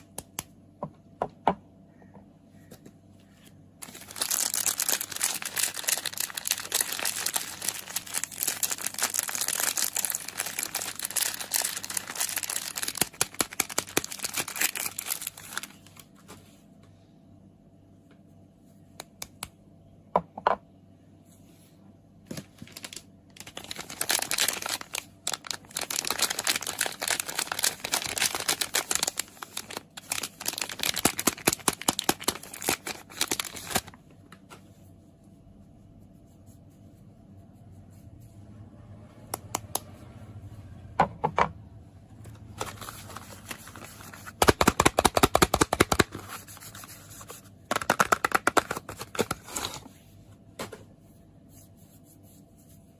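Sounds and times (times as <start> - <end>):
wrappers crinkling and tearing: 3.8 - 16.1, 22.3 - 34.0, 42.4 - 49.9.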